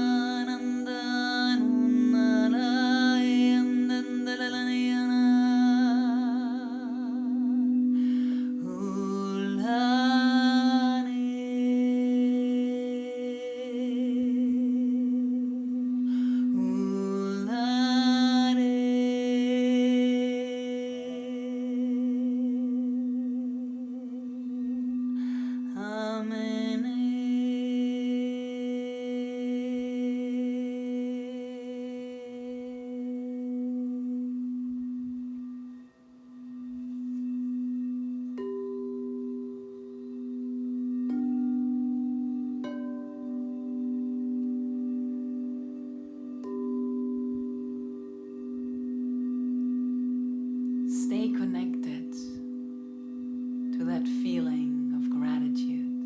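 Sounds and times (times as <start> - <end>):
person humming with vibrato: 0.0 - 35.7
singing bowl drone: 0.0 - 56.0.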